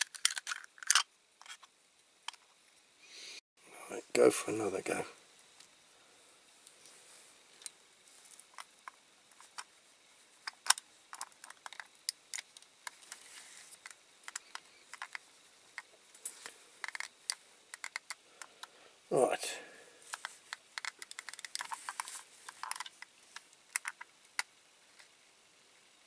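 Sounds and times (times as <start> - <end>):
model parts clicking and tapping: 10.4 - 13.2, 13.8 - 15.2, 15.8 - 18.7, 20.1 - 24.5.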